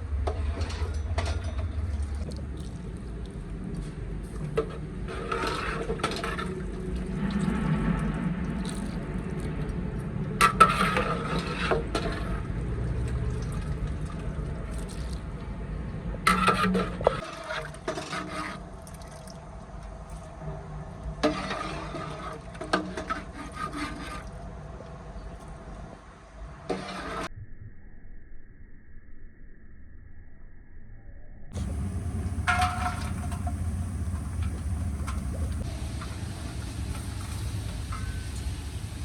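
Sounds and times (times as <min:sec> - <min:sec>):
rubbing and scraping: 0:21.2 - 0:24.3
steady low rush: 0:31.6 - 0:39.0
water sloshing: 0:31.6 - 0:39.0.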